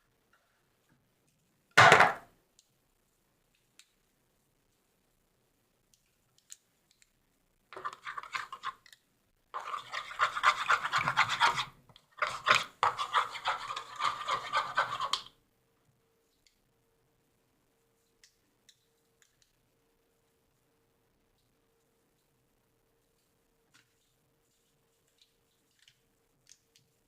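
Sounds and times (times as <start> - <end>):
slime stirred with scratchy scraping: 7.7 - 15.4, 23.0 - 27.0.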